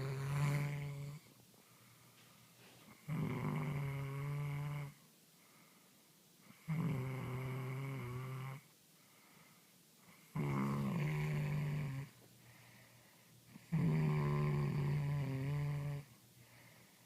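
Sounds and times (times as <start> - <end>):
person snoring: 0.0 - 1.3, 2.9 - 5.0, 6.5 - 8.6, 10.3 - 12.1, 13.5 - 16.1.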